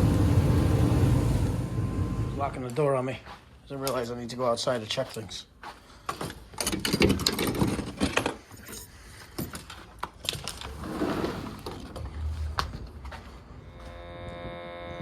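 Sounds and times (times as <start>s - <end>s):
clicks and rattles of objects handled: 6.0s - 10.8s.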